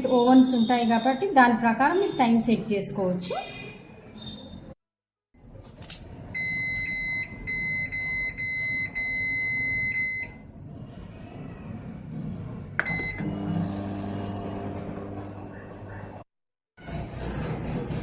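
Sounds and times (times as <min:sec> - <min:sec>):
microwave oven beeping: 0:06.3 - 0:10.5, 0:12.8 - 0:16.1.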